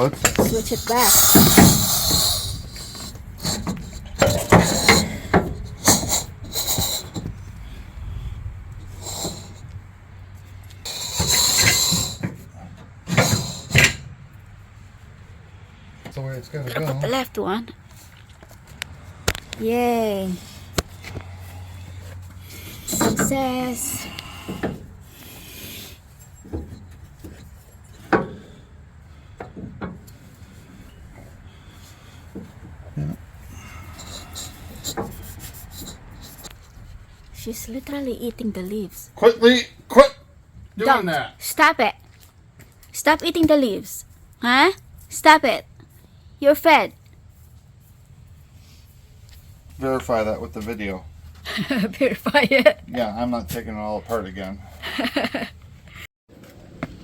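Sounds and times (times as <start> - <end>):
metal brackets and tools clinking: 0.0 - 7.3, 10.9 - 14.1.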